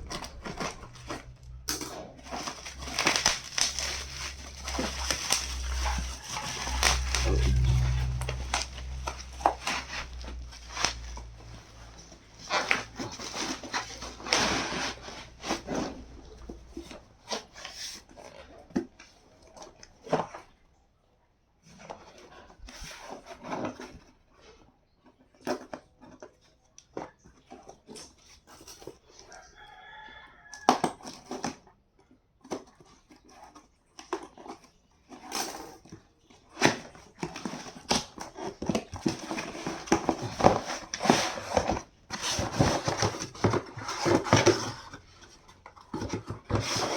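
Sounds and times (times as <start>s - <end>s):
packaging torn open by hand: 0.0s - 11.2s
rooster crowing: 29.3s - 30.8s.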